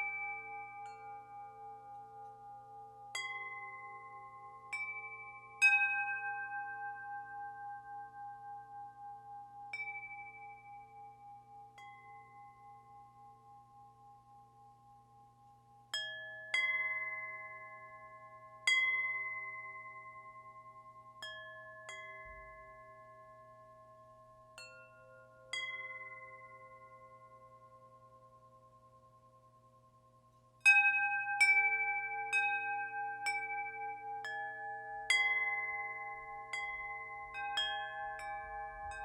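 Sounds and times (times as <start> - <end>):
wind chimes ringing: 30.7 - 39.0.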